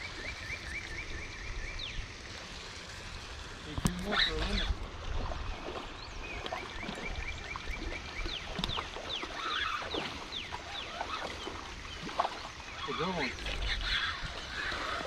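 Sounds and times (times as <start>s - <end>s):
low rumble of water or wind: 0.0s - 15.0s
birds chirping: 3.7s - 15.0s.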